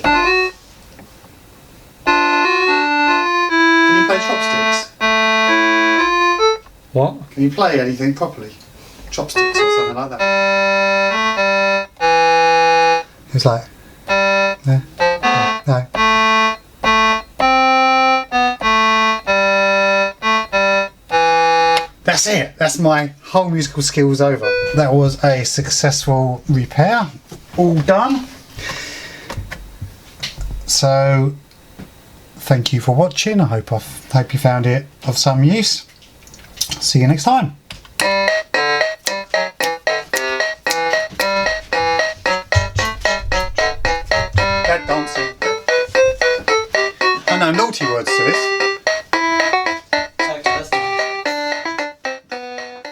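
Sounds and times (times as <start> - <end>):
electronic keyboard simple tune: 0.0 - 0.7, 2.0 - 6.7, 9.2 - 13.2, 14.0 - 22.0, 24.4 - 25.1, 38.0 - 52.9.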